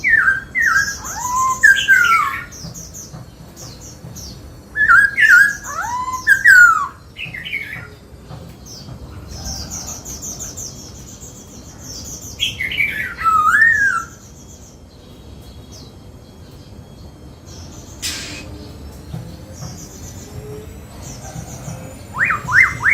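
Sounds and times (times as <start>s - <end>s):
bird rapid high chirping: 0.0s - 22.9s
bird whistling swooping notes: 4.7s - 7.8s, 17.7s - 22.9s.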